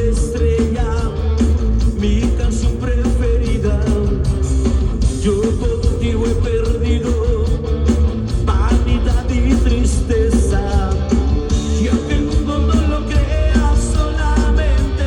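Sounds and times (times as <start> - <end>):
live rock band playing: 0.0 - 15.0
person singing: 8.5 - 15.0.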